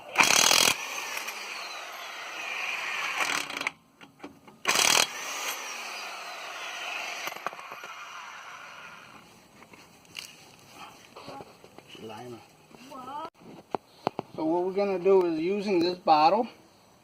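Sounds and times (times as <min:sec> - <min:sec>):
thin falling whine: 0:00.1 - 0:03.8, 0:05.0 - 0:09.2.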